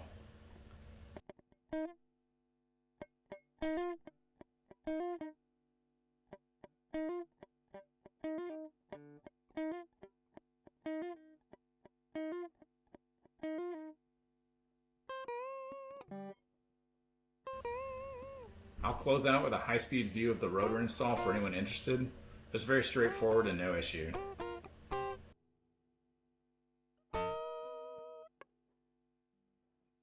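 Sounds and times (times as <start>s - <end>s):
plucked guitar notes: 17.5s - 18.9s, 20.2s - 21.6s, 24.1s - 25.3s, 27.2s - 28.3s.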